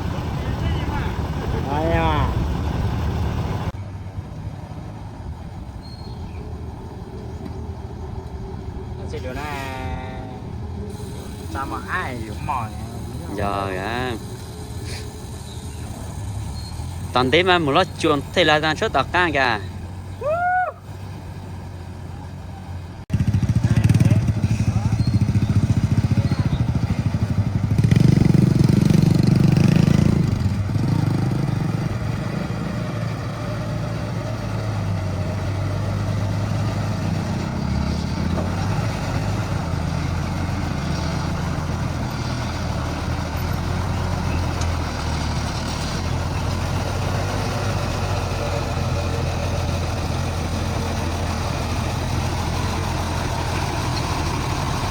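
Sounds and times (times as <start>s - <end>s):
heavy diesel engine running: 0.0s - 20.2s, 20.8s - 54.9s.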